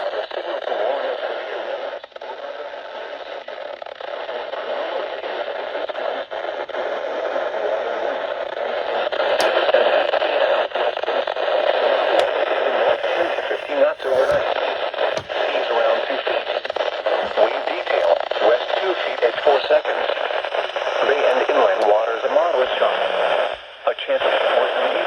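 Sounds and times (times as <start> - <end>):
radio static hiss: 11.6 - 25.0.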